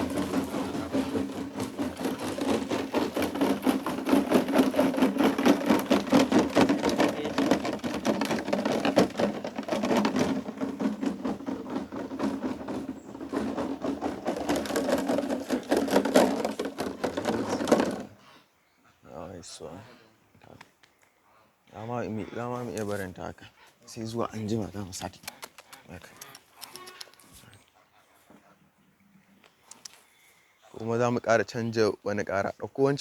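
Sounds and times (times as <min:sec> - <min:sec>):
noisemaker rapid rattling: 0:00.0 - 0:18.0.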